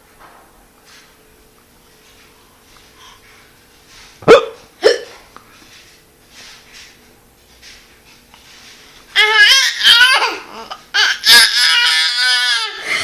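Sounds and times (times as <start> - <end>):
baby squealing: 9.2 - 12.8.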